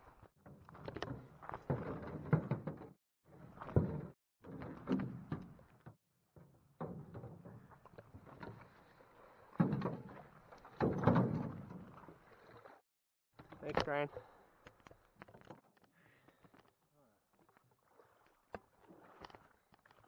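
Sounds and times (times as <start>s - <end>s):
canoe knocks and thuds: 0.8s - 6.0s, 9.5s - 12.0s.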